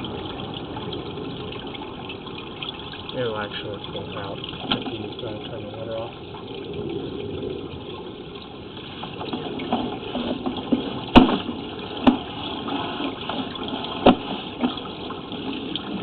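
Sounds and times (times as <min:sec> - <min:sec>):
water gurgling through pipe: 0:00.0 - 0:16.0
sharp knocks on pipe: 0:10.7 - 0:12.3, 0:14.0 - 0:14.3.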